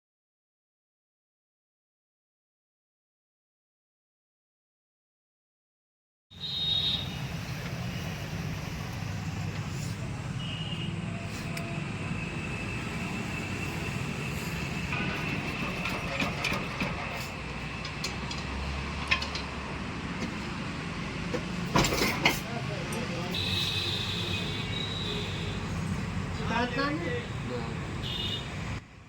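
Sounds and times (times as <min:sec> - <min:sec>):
machine running with rumble: 0:11.0 - 0:20.0.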